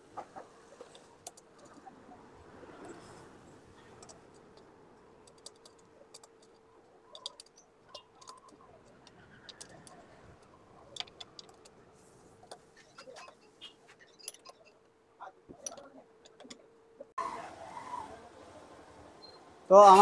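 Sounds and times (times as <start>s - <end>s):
light clicks and ticks: 2.7s - 16.7s.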